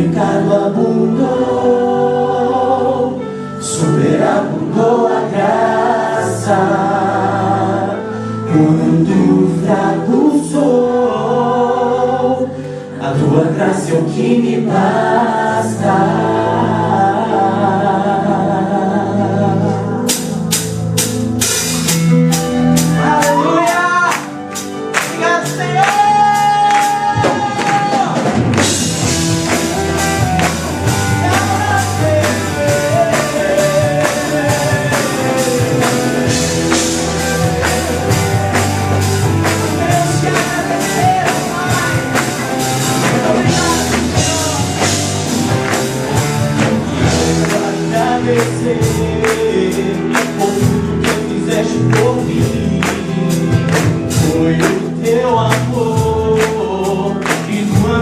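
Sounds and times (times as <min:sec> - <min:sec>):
gospel band music: 0:00.0 - 0:58.0
melodic lead line: 0:20.1 - 0:56.3
percussion beat: 0:20.1 - 0:58.0.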